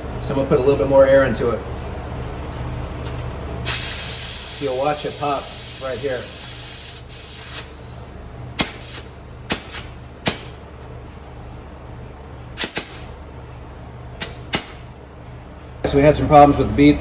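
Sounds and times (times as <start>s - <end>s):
compressed air hissing into tire: 3.6s - 10.6s, 12.6s - 13.1s, 14.2s - 14.8s
tire bead popping onto rim: 8.6s - 10.6s, 12.6s - 13.1s, 14.2s - 14.9s.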